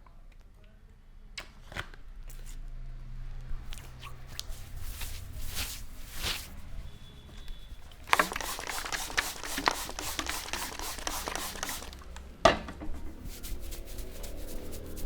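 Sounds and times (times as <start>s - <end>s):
rubbing and tapping on scalp: 7.4s - 12.3s, 12.9s - 15.0s.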